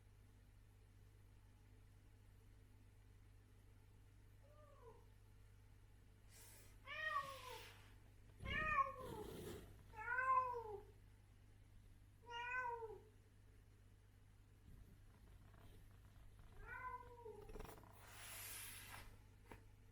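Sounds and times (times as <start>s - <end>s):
cat meowing: 8.4s - 10.9s, 12.2s - 13.1s, 16.6s - 17.6s.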